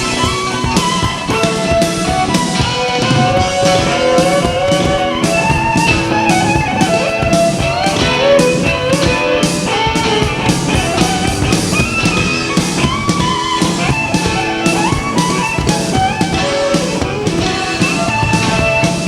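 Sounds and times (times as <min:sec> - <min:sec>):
bass: 0:00.0 - 0:19.0
drum kit: 0:00.0 - 0:19.0
guitar lead melody: 0:00.0 - 0:19.0.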